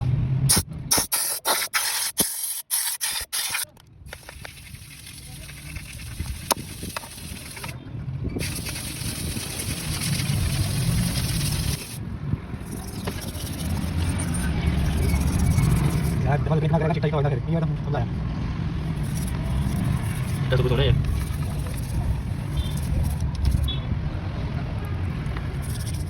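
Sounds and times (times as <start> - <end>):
spray hissing in short bursts: 0.5 - 7.8, 8.4 - 12.0, 19.0 - 23.7, 25.5 - 26.0
car engine running: 8.4 - 16.4, 18.8 - 23.7.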